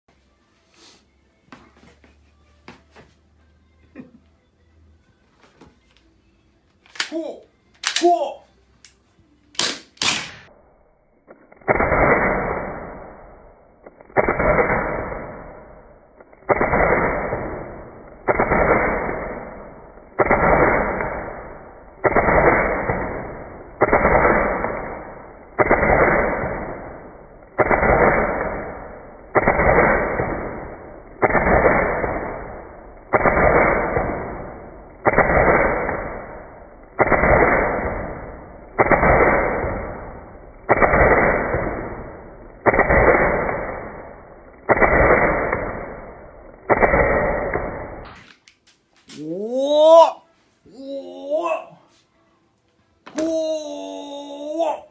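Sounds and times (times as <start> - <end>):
slowed-down pistol shots: 9.6 - 48.3.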